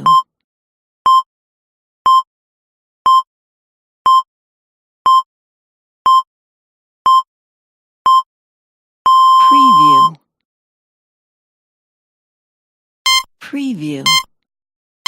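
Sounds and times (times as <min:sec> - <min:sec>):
short electronic timer beeps: 0:00.0 - 0:00.2, 0:13.1 - 0:13.3, 0:14.1 - 0:14.3.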